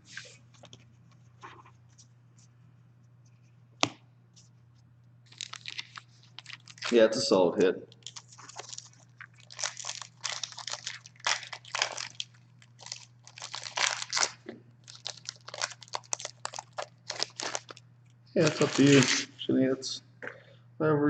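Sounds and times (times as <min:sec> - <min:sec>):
steady low hum: 0:00.0 - 0:21.0
foil wrappers crinkling: 0:05.3 - 0:17.8, 0:18.4 - 0:19.3
cards sliding and flipping: 0:18.7 - 0:19.3.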